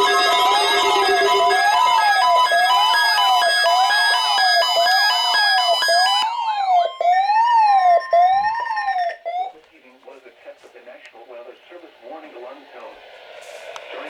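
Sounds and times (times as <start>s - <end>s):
fast electronic beeps: 0.0s - 3.2s
steady electronic tone: 0.0s - 3.3s
electronic siren rising and falling: 0.0s - 9.6s.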